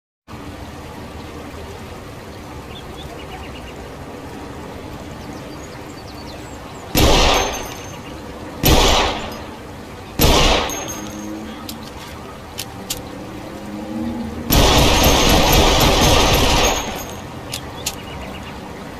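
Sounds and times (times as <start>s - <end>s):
pistol shots: 7.0s - 7.9s, 8.6s - 9.4s, 10.2s - 11.0s, 14.5s - 17.2s.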